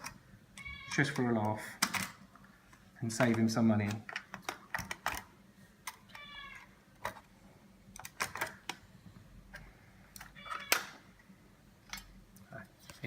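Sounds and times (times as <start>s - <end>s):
cat meowing: 0.6s - 1.3s, 6.1s - 6.7s, 10.4s - 10.9s
clicks of screws and plastic: 1.1s - 6.3s, 8.0s - 8.8s.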